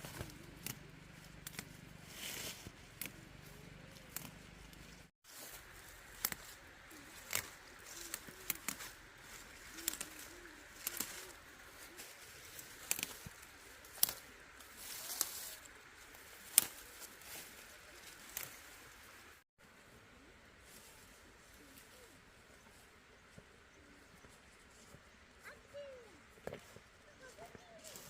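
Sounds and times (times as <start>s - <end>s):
plant stems snapping: 1.4s - 1.7s, 3.0s - 4.8s, 6.1s - 11.4s, 12.5s - 14.2s, 16.4s - 17.4s
dove cooing: 6.7s - 15.0s.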